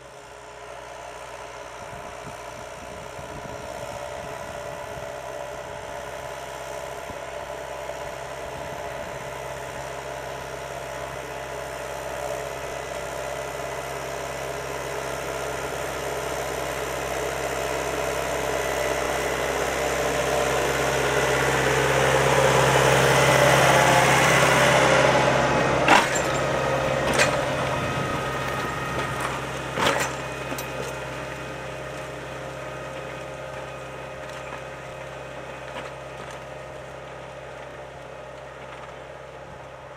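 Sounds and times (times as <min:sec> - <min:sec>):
tractor diesel engine under load: 0:00.0 - 0:39.9.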